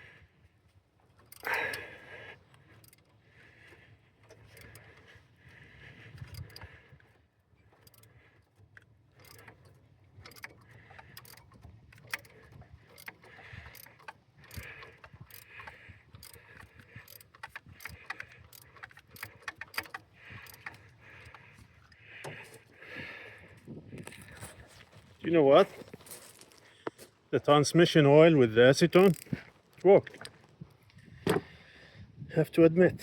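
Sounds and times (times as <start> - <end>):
metallic clicks of rusted bolt turning: 1.2 - 1.9, 2.5 - 3.2, 4.2 - 5.1, 6.1 - 7.0, 7.6 - 22.7, 28.7 - 30.5.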